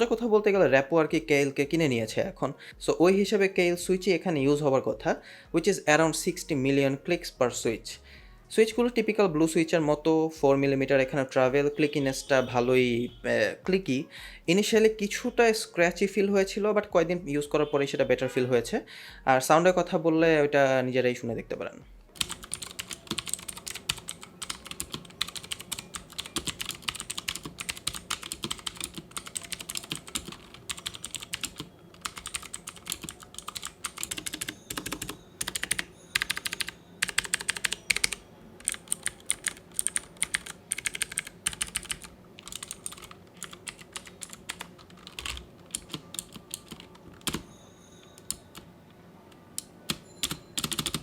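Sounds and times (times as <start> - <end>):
mechanical keyboard clicking: 22.2 - 47.5, 49.6 - 51.0.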